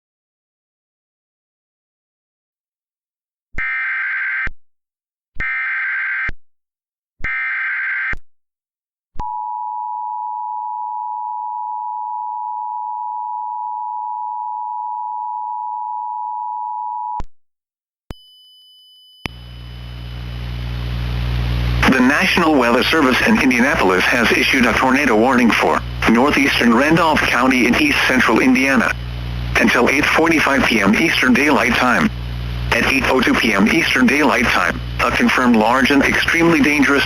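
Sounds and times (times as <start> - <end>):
hiss and hum: 19.3 - 37.0
two-tone attention signal: 21.8 - 24.0
harsh warbling data bursts: 21.8 - 37.0.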